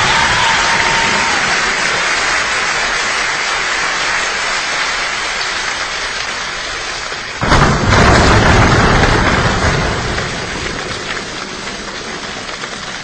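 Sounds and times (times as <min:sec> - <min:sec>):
heavy rain hissing: 0:00.0 - 0:13.0
thunder clap and rumble: 0:07.2 - 0:13.0.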